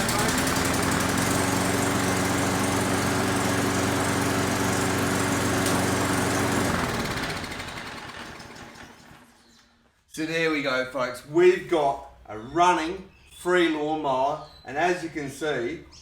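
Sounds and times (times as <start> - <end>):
lawn mower engine running: 0.0 - 9.4.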